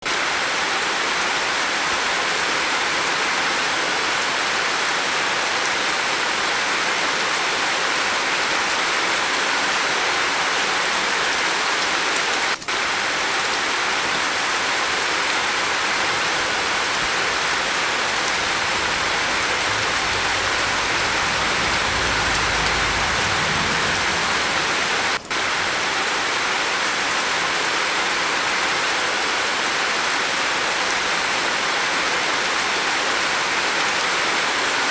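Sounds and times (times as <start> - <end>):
rain on a roof: 0.0 - 34.9
faint low rumble: 16.8 - 25.2.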